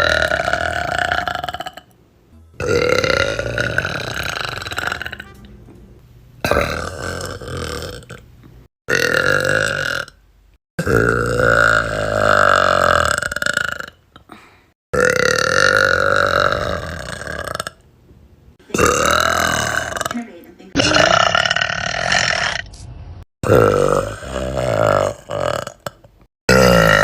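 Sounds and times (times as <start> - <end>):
girls burping: 2.6 - 5.2, 18.7 - 22.5, 26.5 - 27.0.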